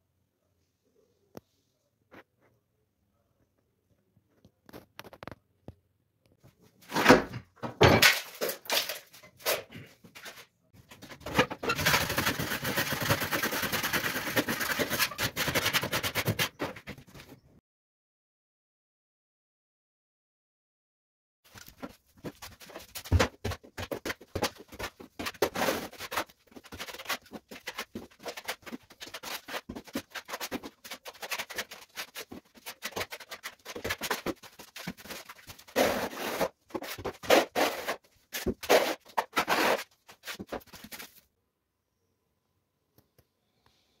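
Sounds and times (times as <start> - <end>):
scraping on a hard surface: 8.0 - 17.4, 21.6 - 41.2.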